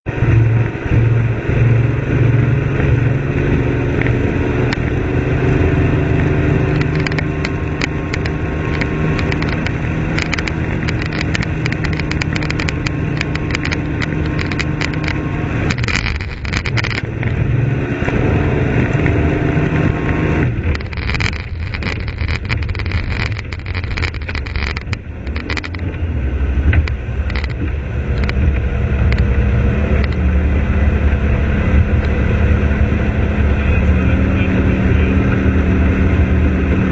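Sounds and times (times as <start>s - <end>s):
vehicle engine running: 0.0s - 36.9s
sharp ticks: 6.6s - 17.4s, 20.1s - 26.0s, 26.7s - 29.3s, 30.0s - 30.2s.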